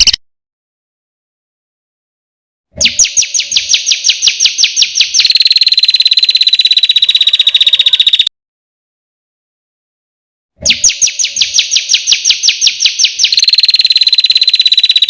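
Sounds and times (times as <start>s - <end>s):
bird singing sharp high notes: 2.8s - 8.3s, 10.6s - 15.0s
bird buzzing trill: 5.1s - 8.3s, 12.1s - 15.0s.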